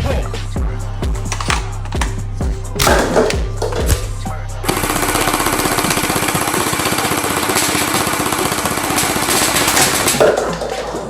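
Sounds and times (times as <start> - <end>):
gel blaster firing full auto: 4.7 - 11.0.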